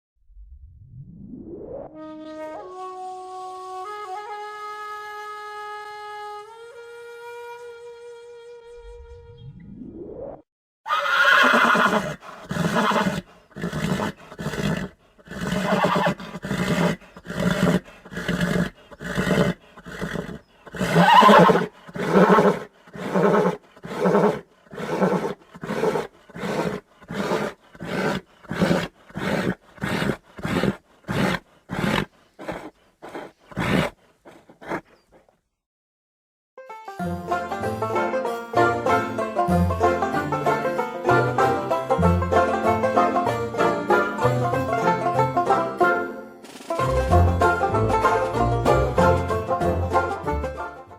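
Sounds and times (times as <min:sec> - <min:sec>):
horse neighing and whinnying: 0:10.9 - 0:35.1.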